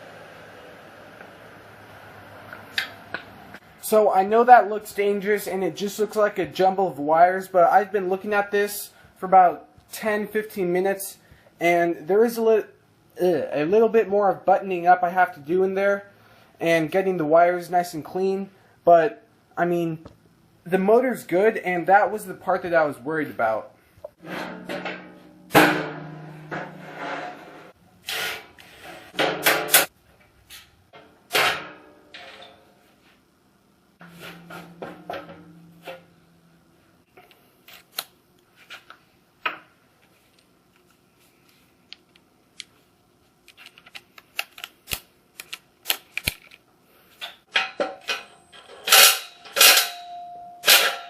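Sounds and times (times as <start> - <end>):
tools and metal parts clanking: 24.3 - 26.8, 31.0 - 32.8, 34.0 - 36.2, 47.2 - 51.0.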